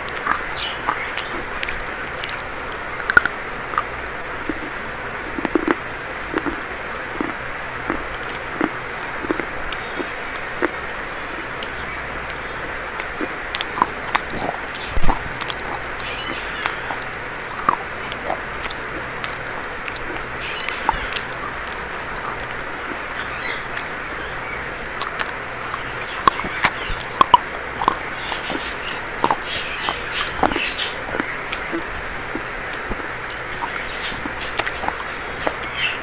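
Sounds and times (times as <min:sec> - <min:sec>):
chalk crunching in mouth: 0:00.0 - 0:06.6, 0:07.2 - 0:10.8, 0:13.0 - 0:23.0, 0:25.0 - 0:35.9.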